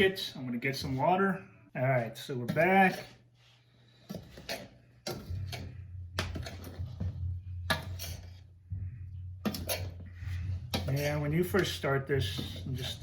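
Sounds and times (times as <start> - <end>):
steady low hum: 0.0 - 13.0
utensil scraping metal pan: 4.1 - 8.6, 9.4 - 13.0.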